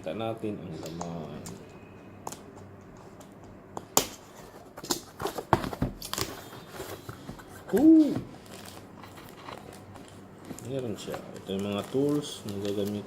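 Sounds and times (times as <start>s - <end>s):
packaging crinkling and rustling: 4.4s - 13.0s.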